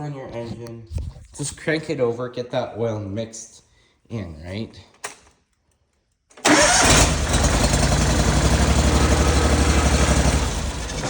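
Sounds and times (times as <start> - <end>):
engine starting and running: 6.4 - 11.0.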